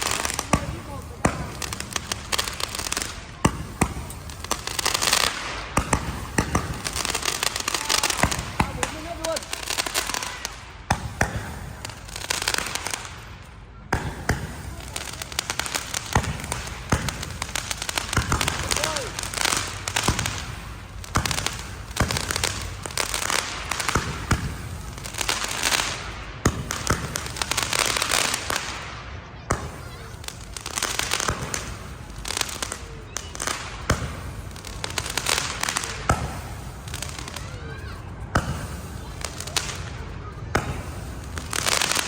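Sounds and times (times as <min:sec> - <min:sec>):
fireworks bangs: 0:00.0 - 0:42.0
fireworks hissing and crackling: 0:00.0 - 0:42.0.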